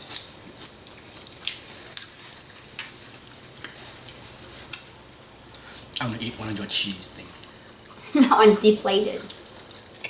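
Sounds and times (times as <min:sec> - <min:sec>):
chewing: 0:00.0 - 0:06.0.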